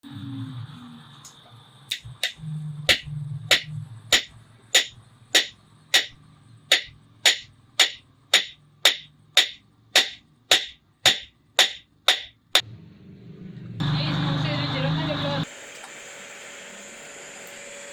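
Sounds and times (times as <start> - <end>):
hammer striking iron on anvil: 1.9 - 12.4.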